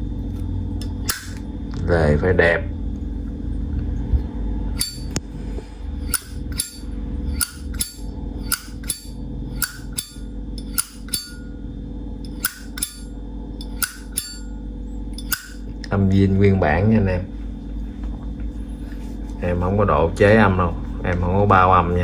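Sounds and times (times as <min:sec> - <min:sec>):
steady low hum: 0:00.0 - 0:22.0
lighter lid metallic clicks: 0:12.3 - 0:13.0, 0:13.6 - 0:14.4.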